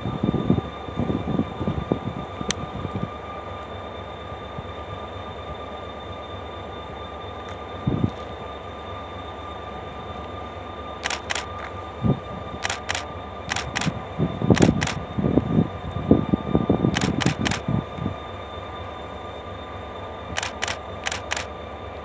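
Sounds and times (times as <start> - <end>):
train rumbling and whining: 0.0 - 22.0
sharp clicks: 11.0 - 11.8, 12.6 - 14.0, 14.6 - 15.0, 17.0 - 17.7, 20.4 - 21.5.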